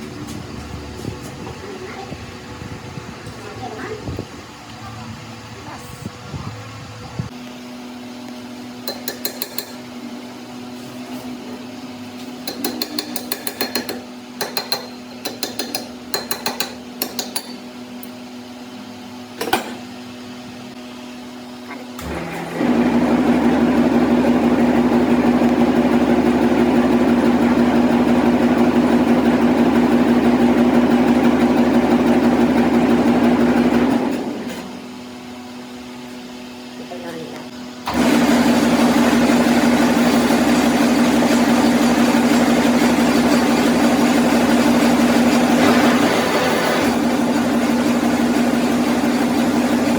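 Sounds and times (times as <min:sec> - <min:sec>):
workshop machinery humming: 0:00.0 - 0:49.9
loud machine running: 0:22.0 - 0:35.0, 0:37.8 - 0:49.9.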